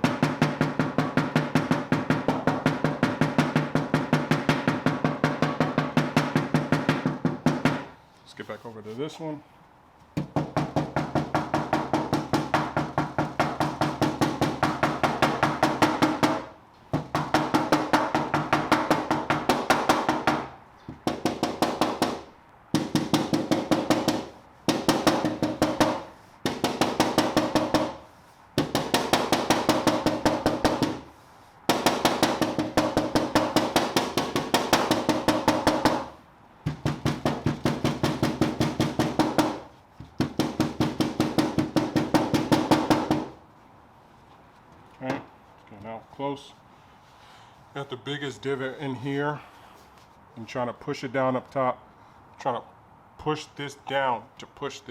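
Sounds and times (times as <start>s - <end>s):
hammer tapping sheet metal: 0.0s - 8.0s, 10.2s - 43.4s.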